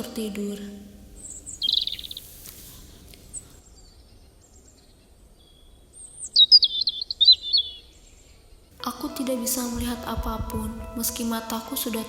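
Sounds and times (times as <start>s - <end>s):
birds chirping: 1.0s - 8.7s.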